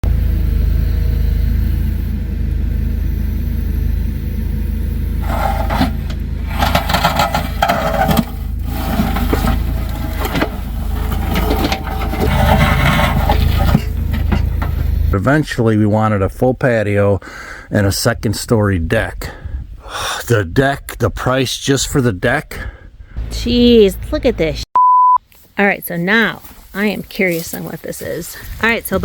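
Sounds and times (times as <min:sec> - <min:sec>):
heavy machine engine rumbling: 0:00.0 - 0:16.6, 0:23.1 - 0:24.6
scraping and knocking: 0:05.2 - 0:15.2.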